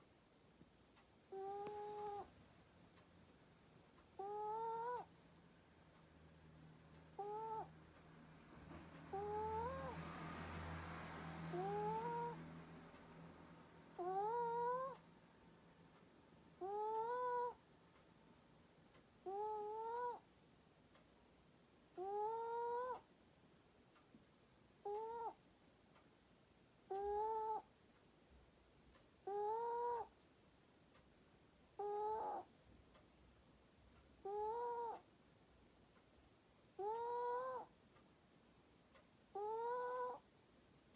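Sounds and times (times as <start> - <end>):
pet snoring with squeaky note: 1.3 - 2.3, 4.2 - 5.1, 7.2 - 7.7, 9.2 - 10.0, 11.5 - 12.4, 14.0 - 15.0, 16.6 - 17.6, 19.2 - 20.2, 22.0 - 23.0, 31.8 - 32.5, 34.3 - 35.0, 36.8 - 37.7, 39.4 - 40.2.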